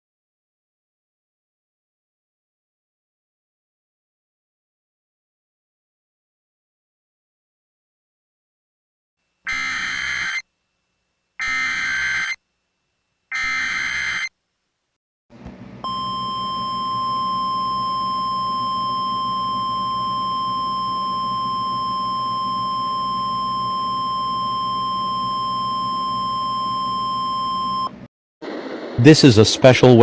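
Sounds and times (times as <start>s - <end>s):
harsh data burst tones: 9.5s - 10.4s, 11.4s - 12.4s, 13.3s - 14.3s
steady high alarm tone: 9.5s - 10.4s, 11.4s - 12.4s, 13.3s - 14.3s, 15.8s - 28.0s.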